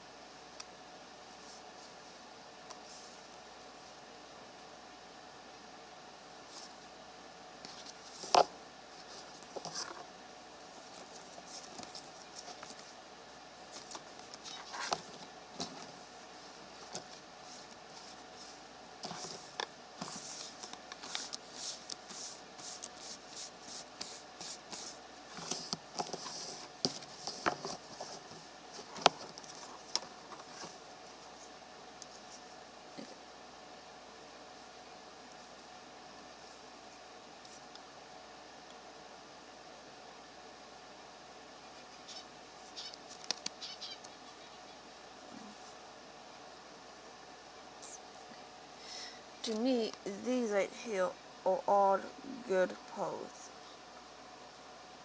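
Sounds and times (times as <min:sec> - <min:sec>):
cards sliding and rustling: 0:16.8 - 0:30.8.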